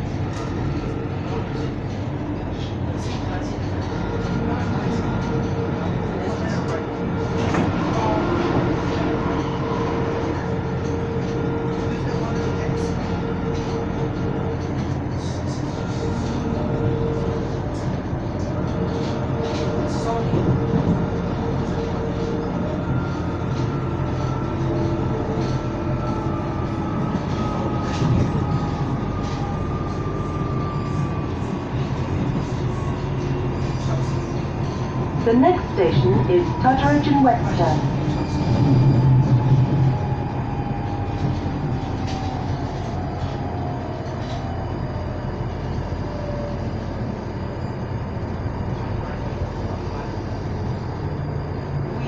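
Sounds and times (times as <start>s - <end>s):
train rumble and hum: 0.0s - 52.0s.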